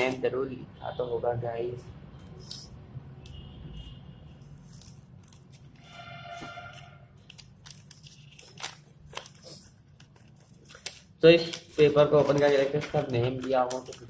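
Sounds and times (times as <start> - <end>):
plastic and paper packaging crinkling: 4.4 - 14.0.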